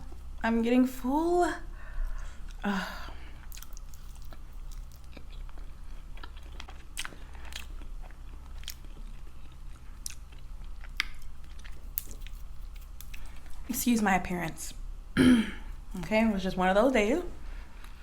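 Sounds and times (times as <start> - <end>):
chewing and crunching: 3.3 - 13.6.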